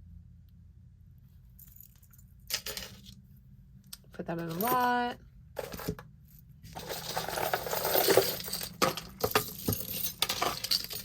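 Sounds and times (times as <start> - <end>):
metal jewelry clinking: 1.6 - 3.1, 4.4 - 5.0, 5.6 - 11.0.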